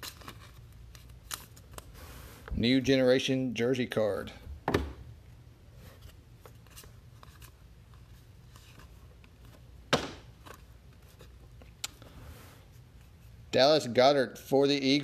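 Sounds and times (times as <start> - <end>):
cards rustling: 0.0 - 2.0, 5.8 - 12.0
low steady hum: 0.0 - 15.0.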